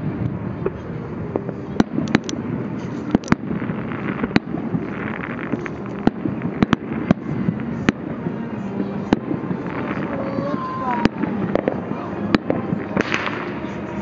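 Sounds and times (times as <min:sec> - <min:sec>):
fireworks bangs: 0:00.0 - 0:14.0
rumble of distant explosions: 0:00.0 - 0:14.0.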